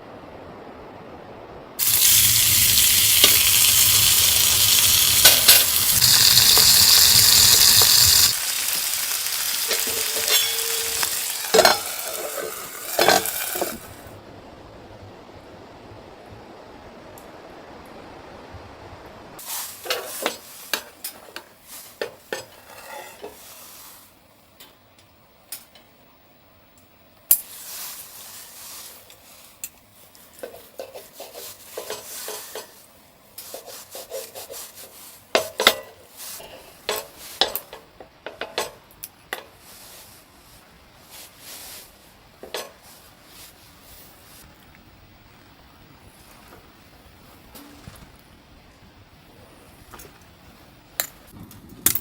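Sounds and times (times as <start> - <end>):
objects clinking and scraping: 3.2 - 14.0.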